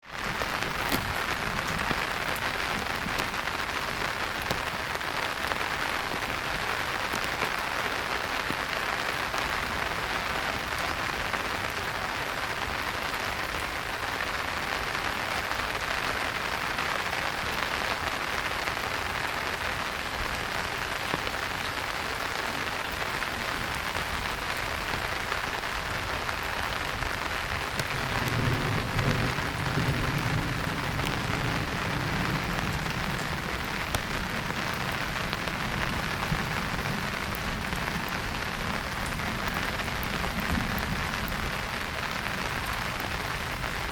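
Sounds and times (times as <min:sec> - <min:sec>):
rain falling on a street: 0:00.0 - 0:43.9.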